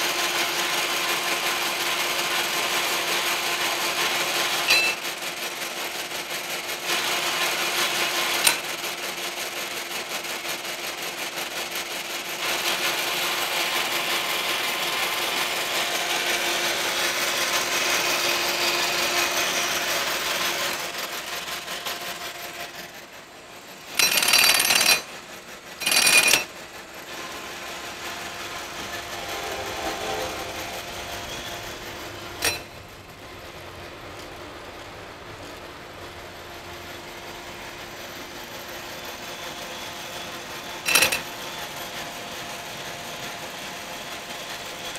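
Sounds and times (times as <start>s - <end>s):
grinder machine humming: 12.4s - 42.9s.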